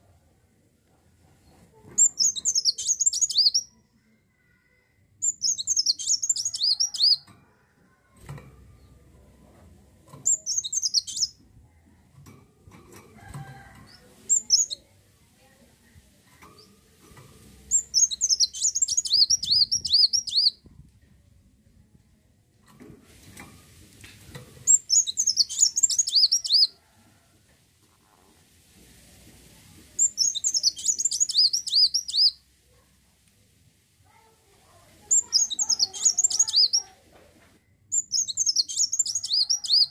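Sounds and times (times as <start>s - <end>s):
bird twittering high-pitched: 2.0s - 3.7s, 5.2s - 7.2s, 10.2s - 11.4s, 14.3s - 14.8s, 17.7s - 20.6s, 24.7s - 26.7s, 30.0s - 32.4s, 35.1s - 36.9s, 37.9s - 39.9s.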